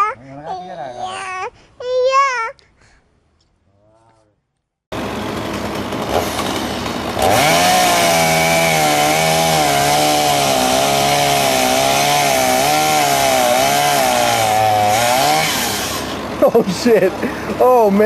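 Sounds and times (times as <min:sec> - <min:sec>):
chainsaw cutting wood: 0:04.9 - 0:17.6.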